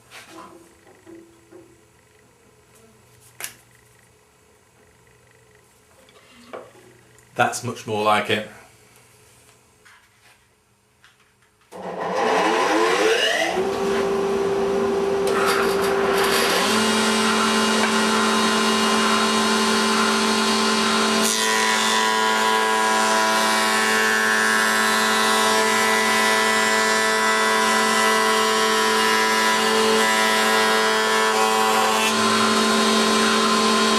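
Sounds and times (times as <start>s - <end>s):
surface planer motor whining: 11.8s - 33.9s.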